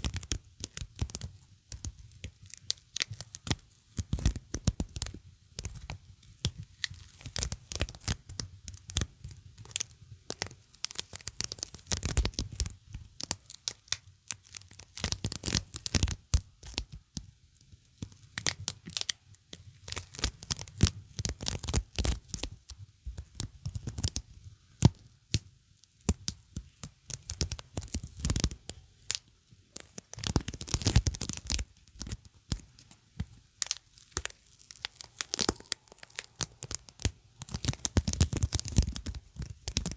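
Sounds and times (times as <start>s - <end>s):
sticky surface peeling apart: 33.6s - 39.5s.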